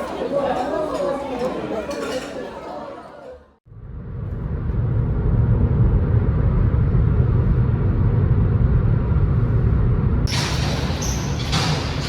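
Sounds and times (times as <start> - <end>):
moving vehicle low rumble: 3.7 - 12.0.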